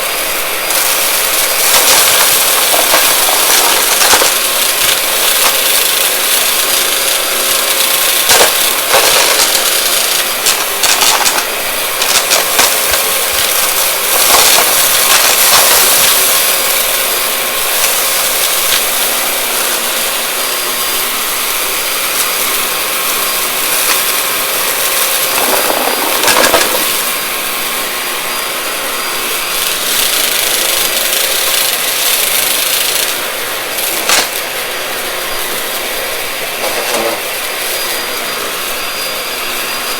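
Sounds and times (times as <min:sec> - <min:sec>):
vacuum cleaner motor whine: 0:00.0 - 0:39.9
debris crackling and rattling: 0:00.7 - 0:19.9, 0:23.4 - 0:27.3, 0:29.6 - 0:34.6, 0:36.4 - 0:37.4.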